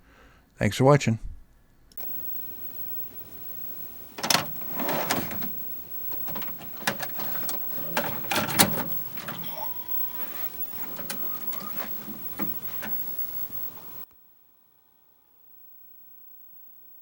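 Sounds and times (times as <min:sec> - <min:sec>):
knocks and clatters: 0:02.0 - 0:14.0.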